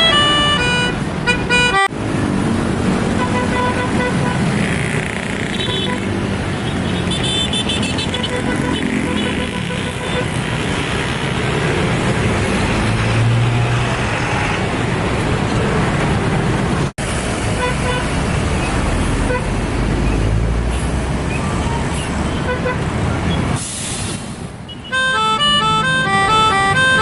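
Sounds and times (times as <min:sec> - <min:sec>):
multi-tone bus horn toots: 0:00.0 - 0:01.9, 0:03.2 - 0:04.4, 0:07.1 - 0:10.4, 0:17.6 - 0:18.1, 0:19.2 - 0:19.5, 0:22.4 - 0:22.8, 0:24.8 - 0:27.0
bus engines and traffic rumble: 0:00.0 - 0:27.0.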